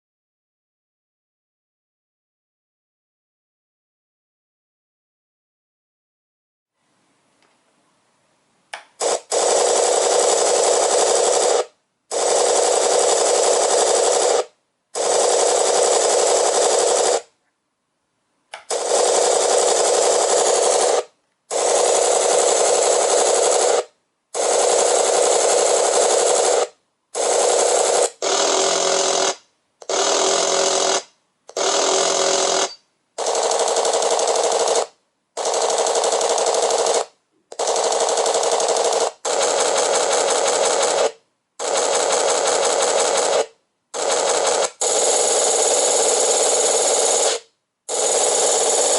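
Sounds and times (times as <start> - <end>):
simulated machine-gun fire: 9.0 - 17.3, 18.6 - 48.9.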